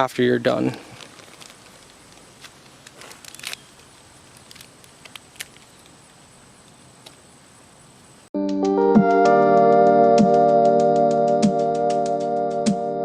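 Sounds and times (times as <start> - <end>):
low steady hiss: 0.0 - 8.3
faint rustles: 0.7 - 6.1.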